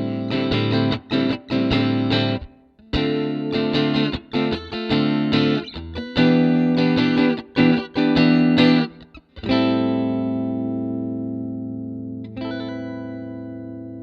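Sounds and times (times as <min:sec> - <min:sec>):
overdriven electric guitar chords: 0:00.0 - 0:14.0.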